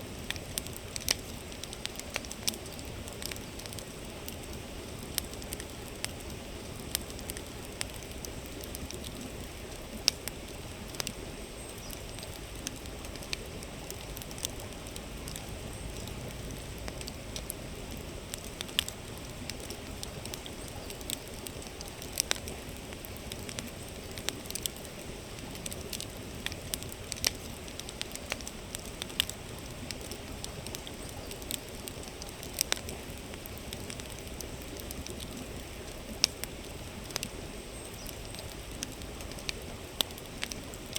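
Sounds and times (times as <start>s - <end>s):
campfire crackling and popping: 0.0s - 40.9s.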